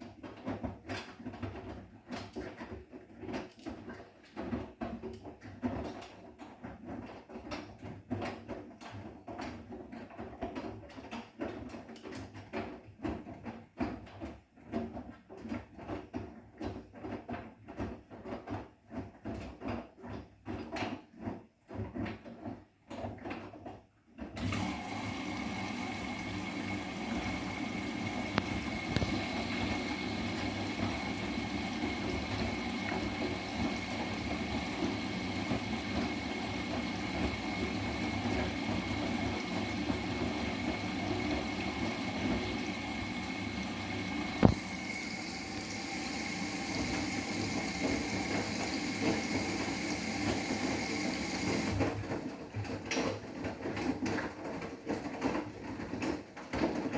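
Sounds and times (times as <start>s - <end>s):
washing machine water rushing: 24.4s - 55.0s.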